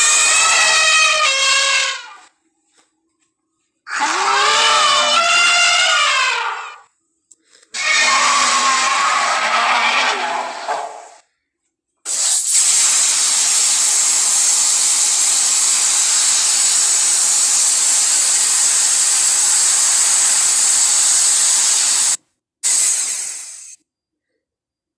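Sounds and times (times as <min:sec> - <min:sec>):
long steady creature hiss: 0:12.1 - 0:23.8.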